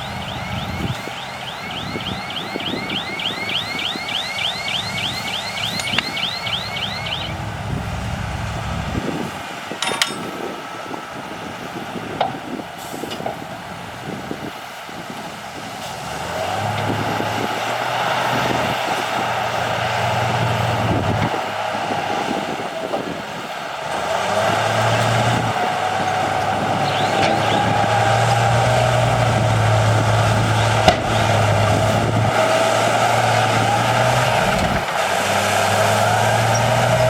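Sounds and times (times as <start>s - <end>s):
heavy diesel machinery engine: 0.0s - 37.0s
sharp metallic knock: 9.8s - 10.4s.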